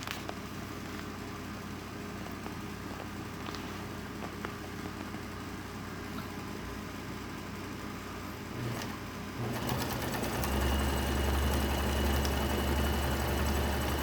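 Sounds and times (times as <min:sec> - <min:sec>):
sewing machine stitching: 0:08.6 - 0:14.0.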